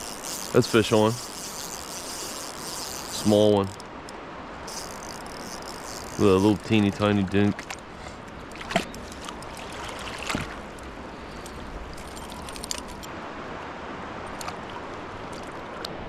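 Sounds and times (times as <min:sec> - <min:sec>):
river water rushing: 0:00.0 - 0:16.0
short clicks or splashes: 0:08.5 - 0:13.1.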